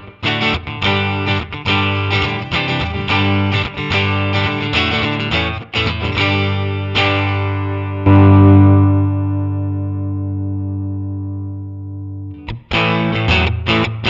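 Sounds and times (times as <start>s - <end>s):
distorted electric guitar strumming: 0.0s - 14.0s
electric guitar chord ringing out: 6.1s - 14.0s.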